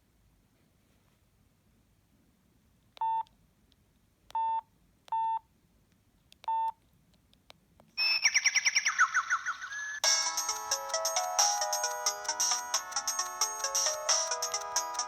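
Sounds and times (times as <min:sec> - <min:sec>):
phone key-press beeps: 0:03.0 - 0:03.3, 0:04.3 - 0:05.4, 0:06.5 - 0:06.8
electronic ringtone: 0:09.8 - 0:15.0.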